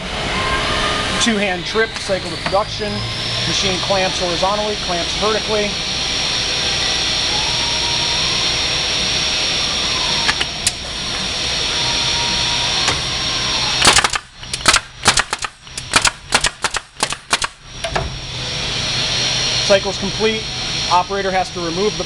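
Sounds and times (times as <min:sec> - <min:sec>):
fastening tool shots: 0:13.8 - 0:17.6.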